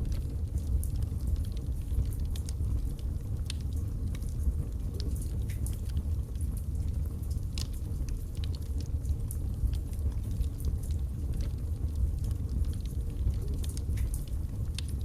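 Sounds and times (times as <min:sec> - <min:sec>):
logs crackling and popping: 0:00.0 - 0:15.0
low rumble of flames: 0:00.0 - 0:15.0.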